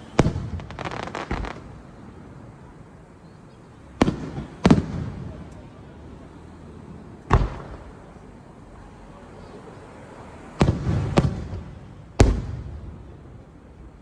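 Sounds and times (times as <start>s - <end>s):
fireworks booming: 0.0s - 2.7s, 4.0s - 5.8s, 6.8s - 8.2s, 10.4s - 14.0s.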